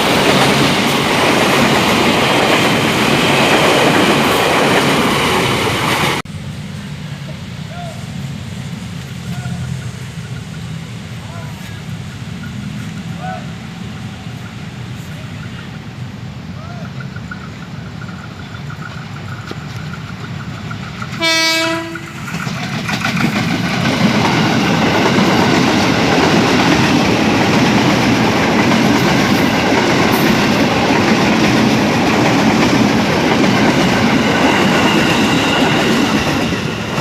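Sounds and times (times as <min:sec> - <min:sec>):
electric train passing: 0:00.0 - 0:37.0
train horn blast: 0:21.2 - 0:22.2.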